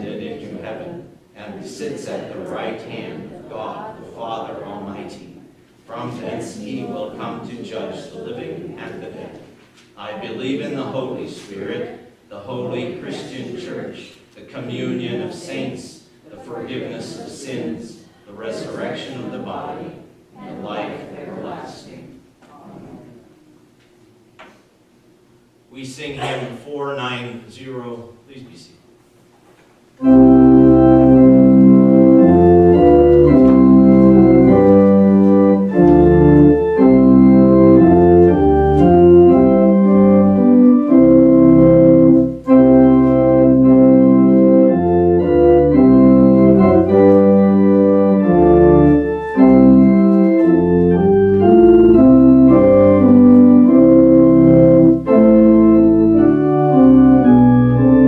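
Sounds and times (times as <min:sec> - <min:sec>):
church organ playing a hymn: 0:02.5 - 0:05.3, 0:30.0 - 0:58.0.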